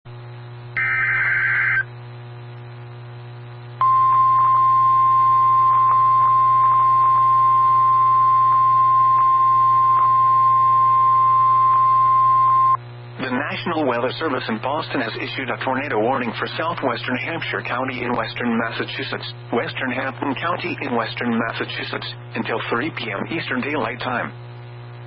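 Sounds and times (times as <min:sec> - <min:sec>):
low receiver hum: 0:00.1 - 0:25.0
steady alarm tone: 0:00.8 - 0:01.9, 0:03.8 - 0:12.8.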